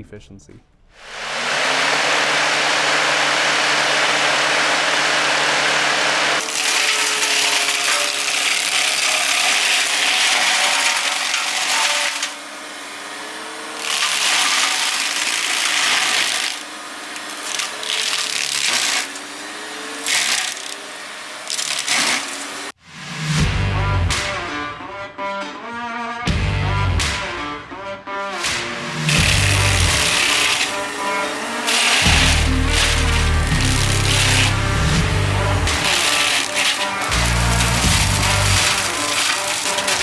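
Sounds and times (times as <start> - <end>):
flail mower shredding brush: 1.0 - 22.8, 28.4 - 40.0
steady hydraulic hum: 28.8 - 40.0.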